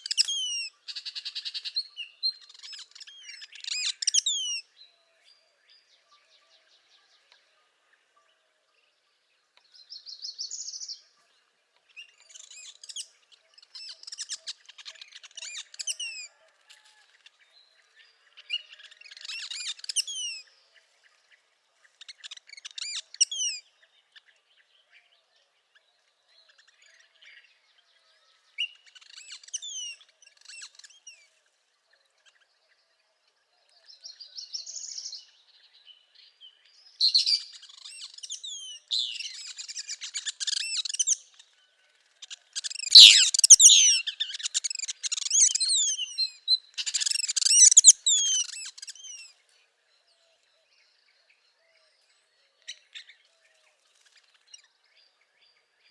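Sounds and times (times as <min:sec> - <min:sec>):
bird singing high quick phrases: 0:42.6 - 0:49.3.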